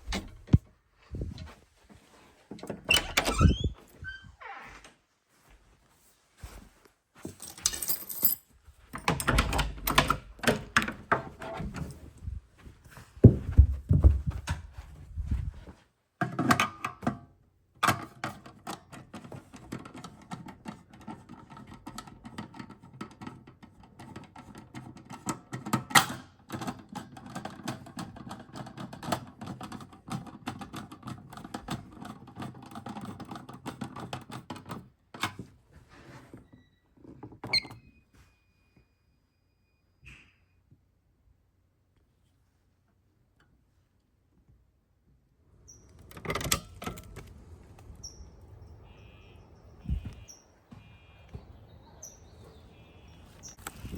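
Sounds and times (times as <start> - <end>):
clicks and thumps of handling: 6.5 - 17.2.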